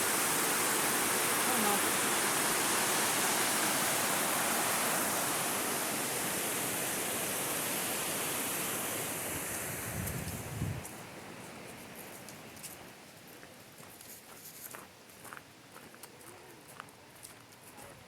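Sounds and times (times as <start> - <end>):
water rushing in creek: 0.0 - 12.4.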